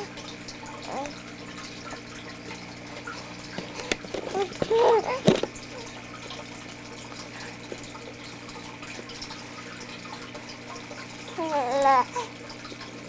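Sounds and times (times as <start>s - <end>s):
steady hiss and low hum: 0.0s - 13.0s
baby cooing: 0.8s - 1.2s, 4.3s - 5.9s, 11.4s - 12.3s.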